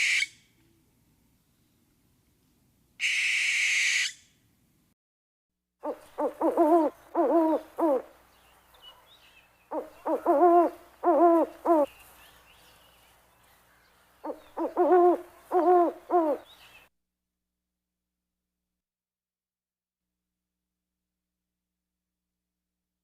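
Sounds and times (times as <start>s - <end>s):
owl hooting: 3.0s - 4.2s, 5.8s - 8.1s, 9.7s - 11.9s, 14.2s - 16.5s.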